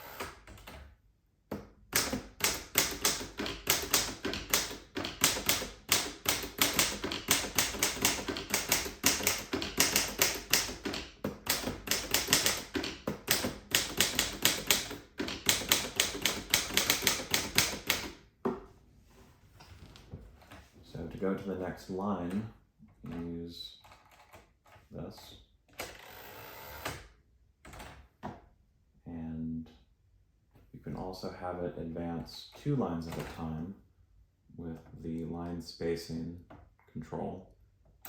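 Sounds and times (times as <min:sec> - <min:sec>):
manual typewriter typing: 0:01.9 - 0:18.2.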